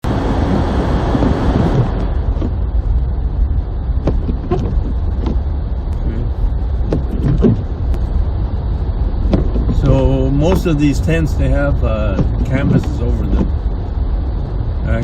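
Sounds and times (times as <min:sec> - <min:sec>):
engine and road rumble: 0:00.0 - 0:15.0
clicks and knocks in car body: 0:04.0 - 0:05.4, 0:06.9 - 0:07.7, 0:09.2 - 0:10.8, 0:12.1 - 0:13.6.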